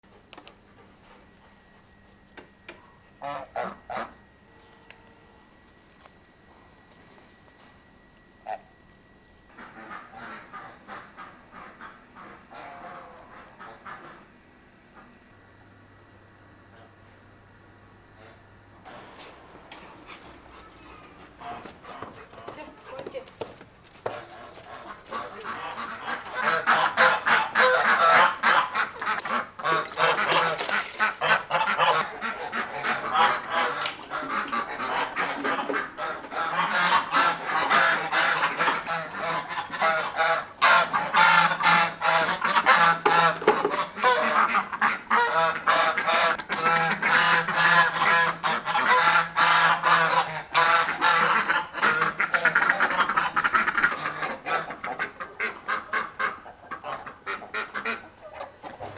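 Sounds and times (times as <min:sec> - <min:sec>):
geese honking and cackling: 0:03.2 - 0:04.2, 0:09.5 - 0:14.3, 0:18.2 - 0:23.2, 0:23.9 - 0:58.9.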